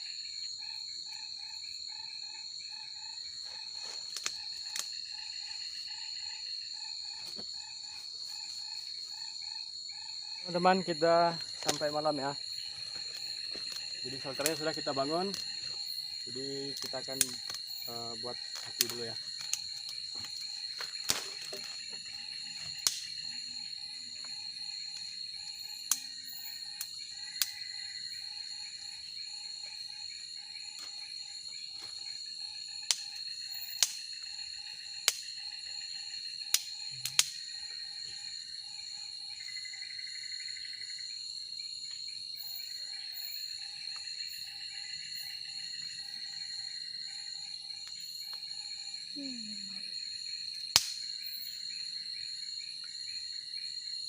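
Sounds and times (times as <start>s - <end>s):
insect chorus drone: 0.0s - 54.0s
pulsing insect call: 0.0s - 54.0s.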